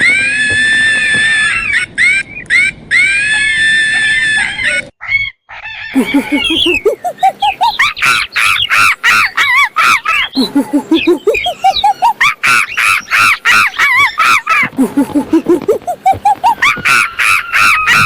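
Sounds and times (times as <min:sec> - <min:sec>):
monkey screaming: 0:00.0 - 0:18.0
monkey hoots climbing in pitch: 0:06.0 - 0:18.0.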